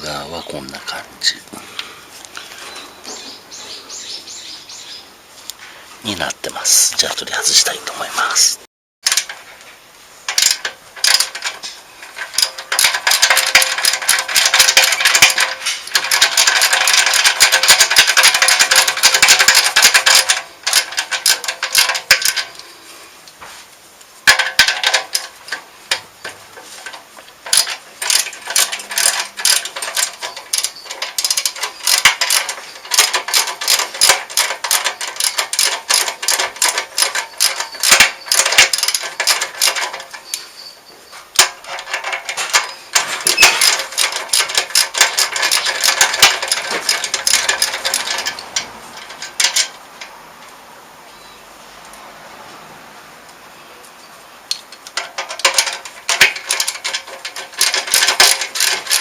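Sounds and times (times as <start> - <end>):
ratchet wrench clicking: 10.3 - 11.6, 12.2 - 22.4, 27.4 - 40.4, 41.4 - 49.8.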